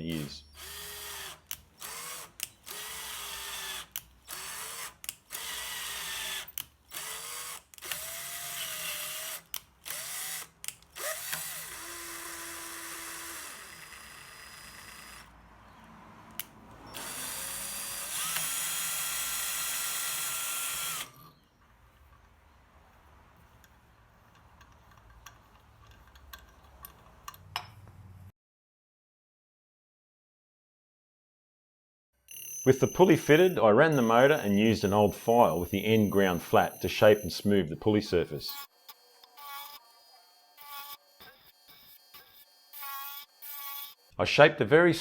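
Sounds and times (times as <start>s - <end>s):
power drill whining: 0.1s - 15.3s, 16.4s - 21.5s, 32.3s - 44.2s.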